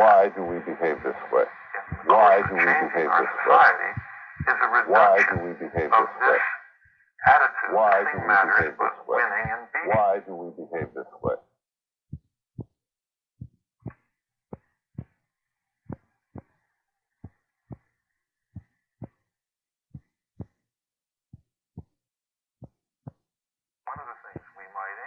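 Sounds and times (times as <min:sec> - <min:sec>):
slow heartbeat thumps: 0:00.0 - 0:07.0, 0:07.8 - 0:11.4, 0:12.1 - 0:12.8, 0:13.4 - 0:15.2, 0:15.9 - 0:16.6, 0:17.2 - 0:19.3, 0:19.9 - 0:20.7, 0:21.3 - 0:22.0, 0:22.6 - 0:23.3.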